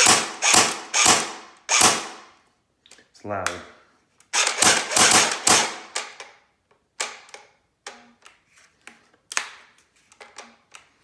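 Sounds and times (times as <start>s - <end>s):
airsoft rifle firing: 4.4s - 6.0s.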